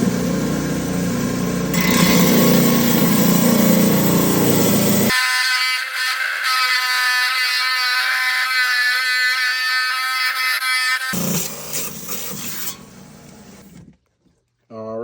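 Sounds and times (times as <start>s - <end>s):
rock saw whining: 1.7s - 13.7s.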